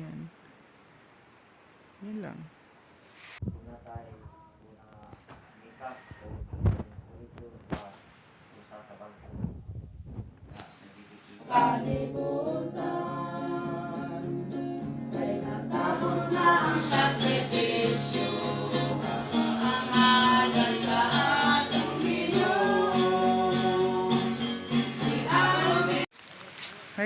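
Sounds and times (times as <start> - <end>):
person singing: 15.4 - 26.1.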